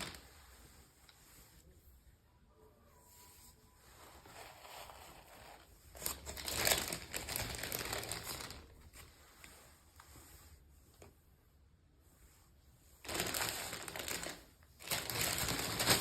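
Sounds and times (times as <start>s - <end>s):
packaging crinkling and rustling: 0.0s - 0.2s, 4.3s - 9.1s, 13.0s - 16.0s.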